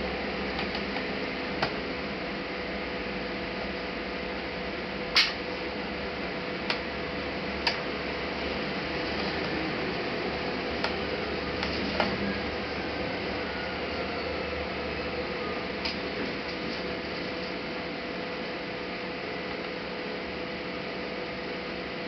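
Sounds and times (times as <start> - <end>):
steady background hum: 0.0 - 22.0.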